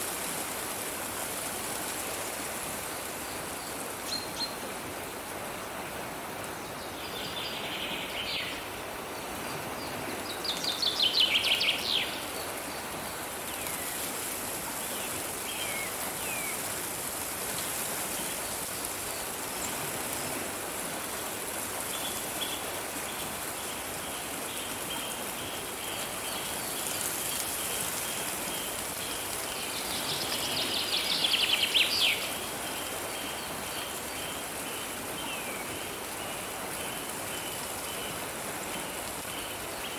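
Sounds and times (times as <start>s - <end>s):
stream flowing: 0.0s - 39.9s
songbirds calling: 6.6s - 14.1s, 14.9s - 16.6s, 21.9s - 39.9s.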